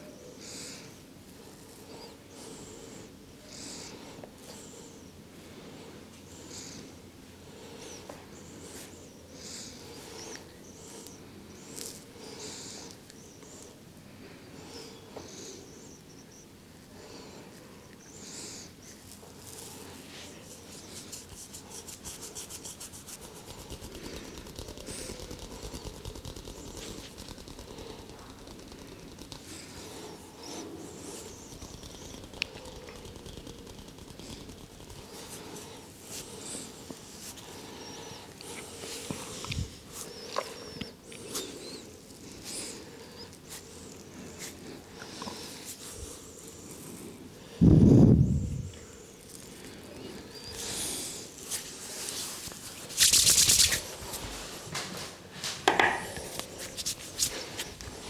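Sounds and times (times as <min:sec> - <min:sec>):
hands rubbing hair and skin: 0:19.0 - 0:27.4, 0:50.6 - 0:58.0
rasping rub: 0:19.4 - 0:36.4.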